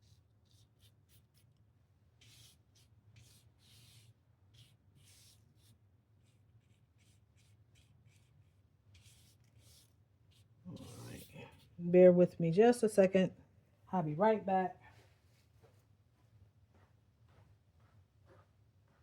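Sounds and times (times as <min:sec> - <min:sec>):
faint scratching rubs: 0:02.2 - 0:12.1.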